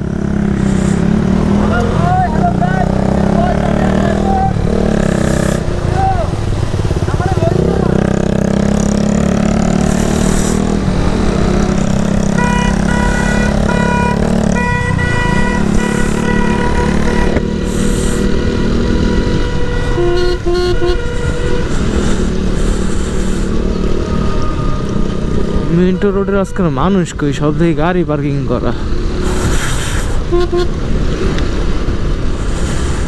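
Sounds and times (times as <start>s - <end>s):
motorcycle engine running: 0.0s - 25.7s
low horn toot: 11.4s - 27.3s, 30.2s - 30.9s
vehicle horn blasts: 12.3s - 17.5s, 18.9s - 22.3s, 30.3s - 30.8s.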